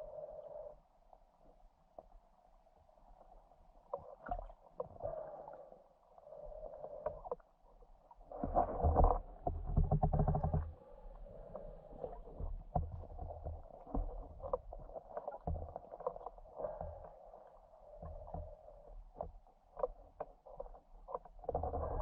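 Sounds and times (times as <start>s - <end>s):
underwater rumble: 2.0s - 22.0s
muffled underwater noise: 4.0s - 7.4s.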